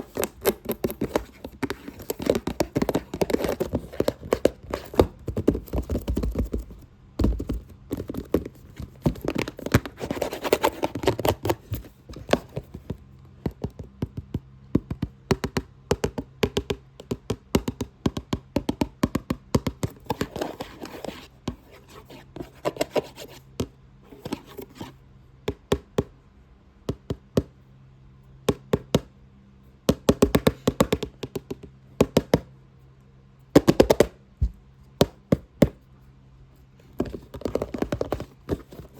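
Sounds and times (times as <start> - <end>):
rapid tapping on a box: 0.0 - 26.1, 26.9 - 27.6, 28.4 - 29.1, 29.8 - 32.6, 33.5 - 35.9, 36.9 - 38.9
scratchy rubbing: 7.9 - 12.8, 20.1 - 23.5.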